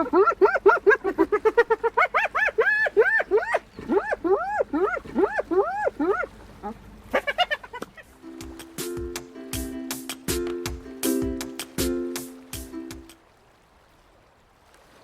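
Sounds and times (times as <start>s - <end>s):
hyena giggling: 0.0s - 8.1s.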